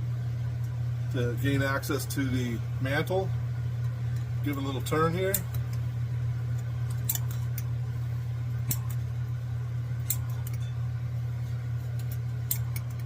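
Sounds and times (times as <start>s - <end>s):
electric fan humming: 0.0s - 13.0s
metal and glass lantern clinks: 10.1s - 10.9s.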